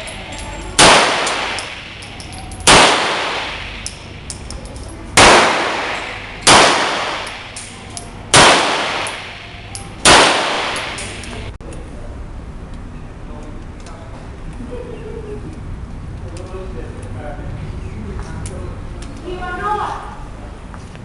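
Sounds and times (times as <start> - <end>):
pistol shots echoing: 0.8 - 4.1, 5.2 - 7.7, 8.3 - 11.3.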